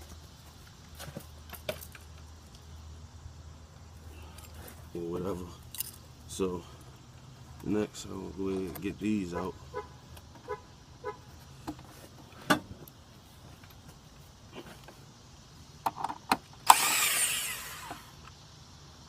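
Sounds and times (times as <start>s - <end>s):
cordless impact tool running: 16.6s - 18.2s.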